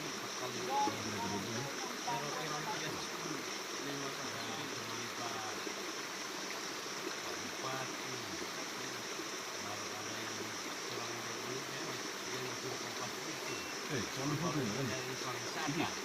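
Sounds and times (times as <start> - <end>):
faint distant voices: 0.0 - 5.6
stream water rushing: 0.0 - 16.0.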